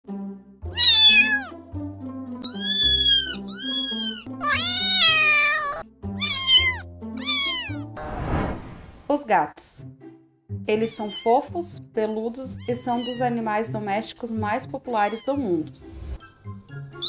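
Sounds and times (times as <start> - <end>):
cat meowing: 0.7 - 1.6, 2.4 - 7.9, 10.8 - 11.4, 12.5 - 13.4, 14.9 - 15.6.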